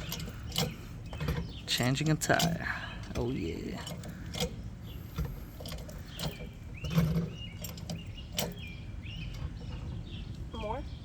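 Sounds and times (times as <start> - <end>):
hand tools clicking on car wheel: 0.0 - 8.8.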